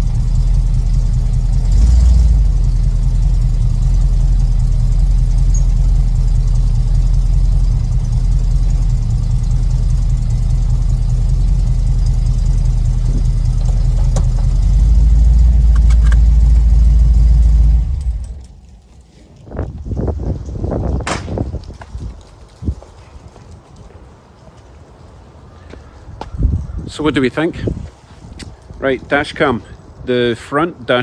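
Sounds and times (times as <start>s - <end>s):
engine exhaust deep rumble: 0.0s - 22.8s.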